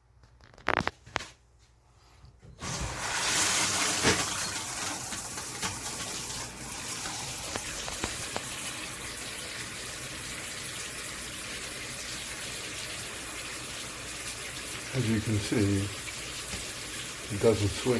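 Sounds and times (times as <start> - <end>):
shower head spraying water: 2.6 - 10.0.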